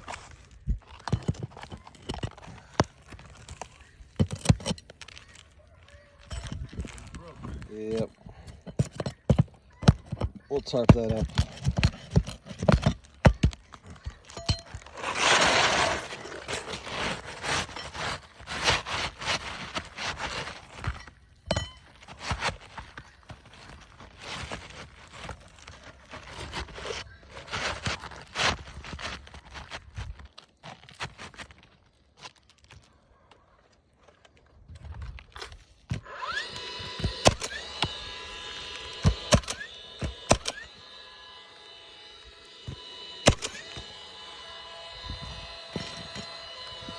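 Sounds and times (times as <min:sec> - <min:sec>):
asphalt roofing cracking and scraping: 0:00.0 - 0:46.9
mechanical hum with rising whines: 0:36.0 - 0:46.9.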